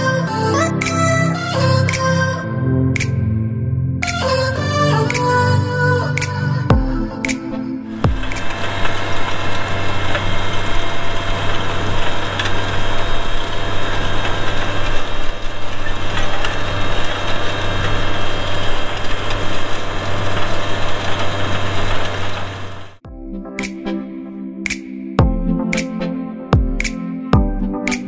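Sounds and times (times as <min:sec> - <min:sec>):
mechanical and field noise: 0:08.0 - 0:23.0.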